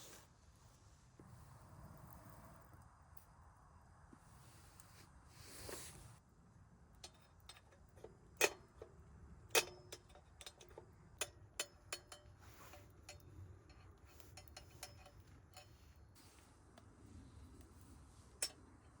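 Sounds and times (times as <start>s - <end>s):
kindling crackling in wood stove: 4.3s - 19.0s.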